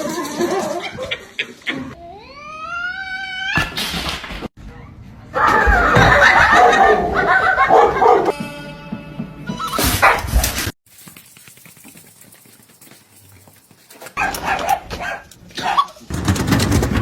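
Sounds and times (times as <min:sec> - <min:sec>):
dog barking: 0:05.4 - 0:08.4, 0:10.0 - 0:10.4, 0:14.2 - 0:16.0.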